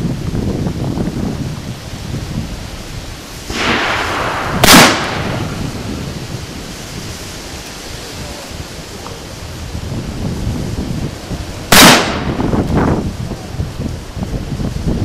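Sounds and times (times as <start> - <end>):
rushing noise: 0.0 - 15.0
revolver gunshot: 3.5 - 5.9, 11.7 - 12.4.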